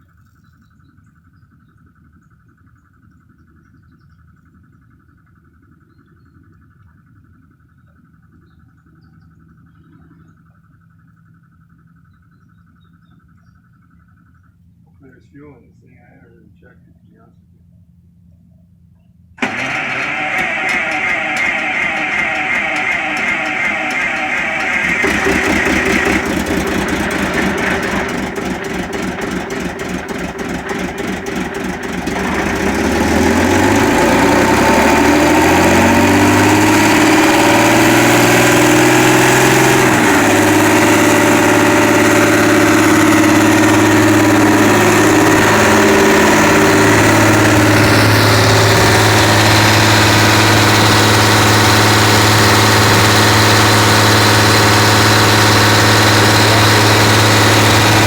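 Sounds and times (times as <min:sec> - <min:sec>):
small engine running compressor: 0:19.4 - 0:58.0.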